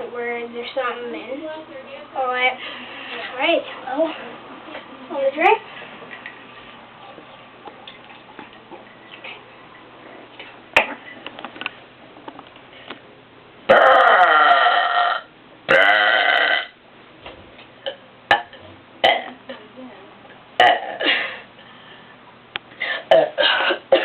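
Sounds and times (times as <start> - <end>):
person belching loudly: 13.7 - 16.8, 18.3 - 19.4, 20.6 - 21.1, 23.1 - 23.4.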